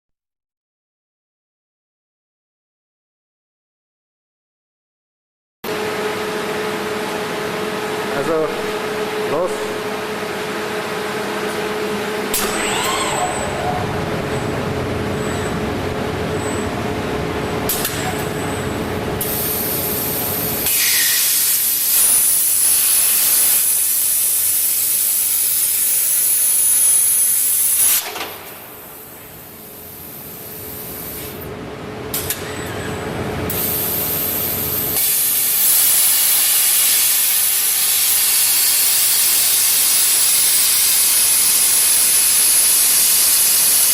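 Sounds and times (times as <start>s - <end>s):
machine hum: 5.7s - 20.8s
plasma cutting torch hissing: 19.2s - 28.1s, 29.8s - 31.4s, 33.5s - 43.9s.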